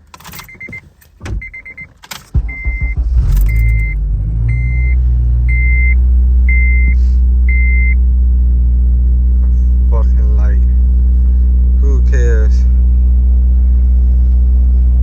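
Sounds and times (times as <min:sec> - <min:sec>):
car door: 0:00.0 - 0:03.9
engine cranking and idling: 0:00.0 - 0:15.0
dashboard warning chime beeps: 0:00.4 - 0:08.0.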